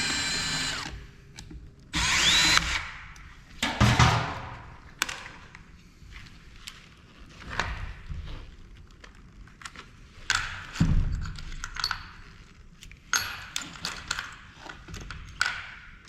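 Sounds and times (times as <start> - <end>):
power drill whining: 0.0 - 1.0, 2.0 - 2.9.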